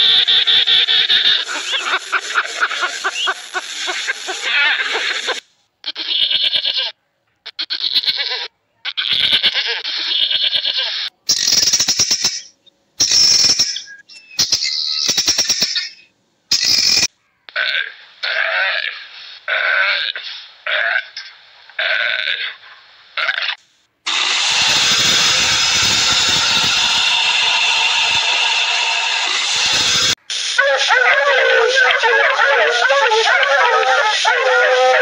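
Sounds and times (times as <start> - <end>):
animal calls: 0.0 - 6.9, 30.5 - 35.0.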